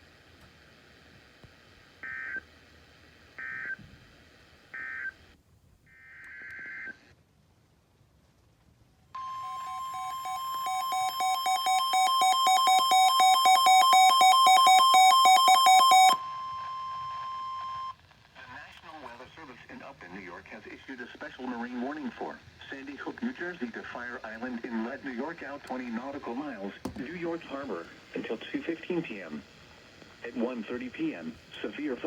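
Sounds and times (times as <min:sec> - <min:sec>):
rapid pulsing alarm beep: 0:09.2 - 0:17.9
steady warning alarm tone: 0:09.2 - 0:18.0.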